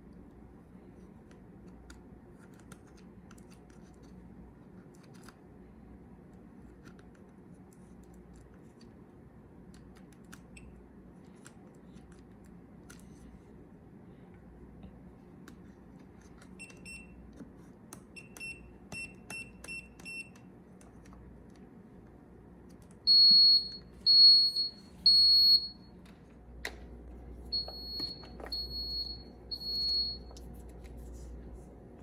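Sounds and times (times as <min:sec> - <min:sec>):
electronic beeper beeping: 0:27.5 - 0:30.3.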